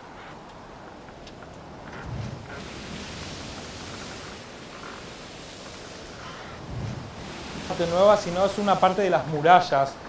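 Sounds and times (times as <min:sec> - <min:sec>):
rushing hiss: 0:02.0 - 0:10.0.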